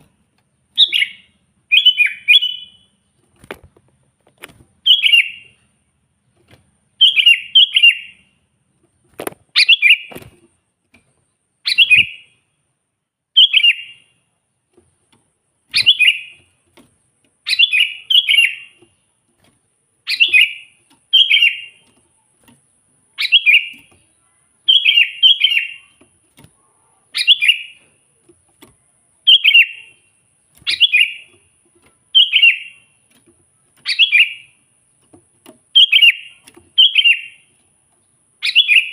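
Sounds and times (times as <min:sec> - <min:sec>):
bulbul singing: 0:00.6 - 0:03.0, 0:04.8 - 0:05.7, 0:06.9 - 0:08.4, 0:09.5 - 0:10.3, 0:11.6 - 0:12.4, 0:13.3 - 0:14.2, 0:15.7 - 0:16.6, 0:17.4 - 0:19.4, 0:20.0 - 0:26.3, 0:27.0 - 0:28.2, 0:29.2 - 0:34.7, 0:35.5 - 0:38.9.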